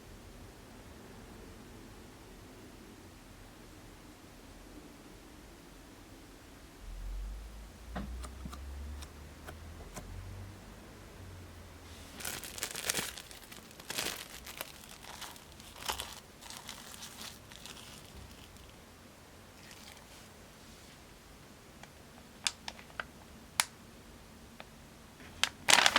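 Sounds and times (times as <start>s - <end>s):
materials crinkling and rustling: 11.9s - 18.8s, 25.2s - 25.9s.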